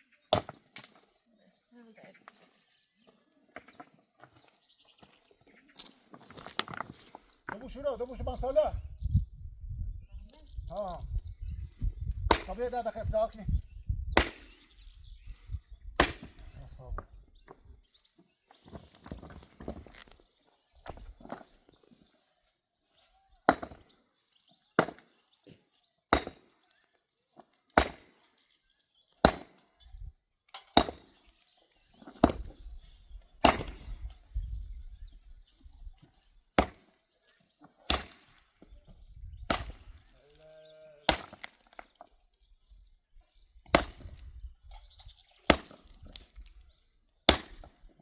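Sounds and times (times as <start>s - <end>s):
axe chopping wood: 0.3s - 1.0s, 12.3s - 12.7s, 14.1s - 14.7s, 16.0s - 16.6s, 23.5s - 23.9s, 24.8s - 25.2s, 26.1s - 26.5s, 27.7s - 28.2s, 29.2s - 29.7s, 30.6s - 31.2s, 32.0s - 32.7s, 33.4s - 34.1s, 36.6s - 37.0s, 37.9s - 38.5s, 39.4s - 40.0s, 41.1s - 41.9s, 43.6s - 44.3s, 45.5s - 46.5s, 47.3s - 47.9s.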